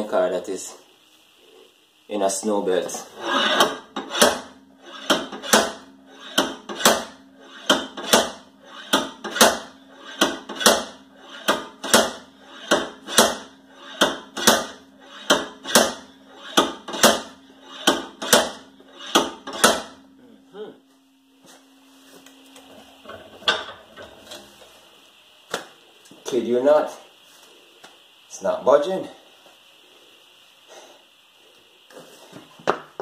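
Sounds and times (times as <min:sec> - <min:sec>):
sledgehammer striking metal hub: 0:03.2 - 0:20.0.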